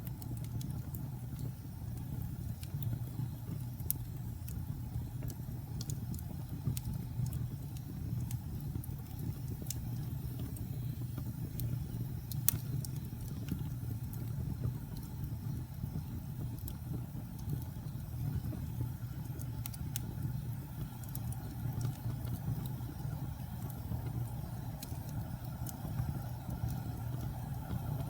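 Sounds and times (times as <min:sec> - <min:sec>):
fire crackling: 0:00.0 - 0:28.0
fire pops and snaps: 0:00.0 - 0:28.0
low steady fire rumble: 0:00.0 - 0:28.0.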